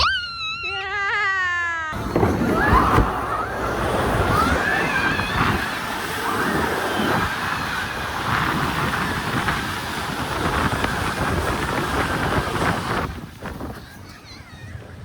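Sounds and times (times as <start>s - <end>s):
faint high voices: 0.0s - 6.7s
wind buffeting microphone: 2.0s - 15.0s.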